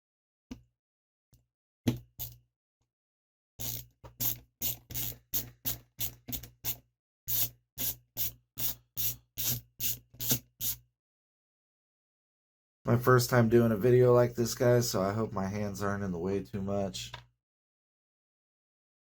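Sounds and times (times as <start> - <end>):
socket ratchet wrench ratcheting: 3.6 - 10.8.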